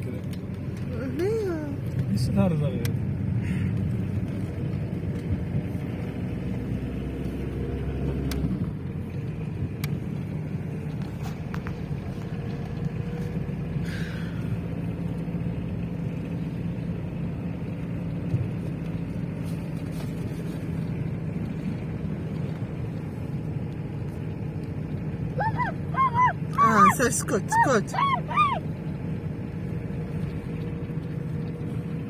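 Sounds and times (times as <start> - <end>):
motor vehicle engine running: 0.0 - 32.0.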